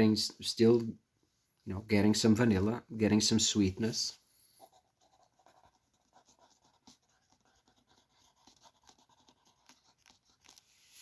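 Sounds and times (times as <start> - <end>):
faint small clicks and scratches: 5.5 - 10.8.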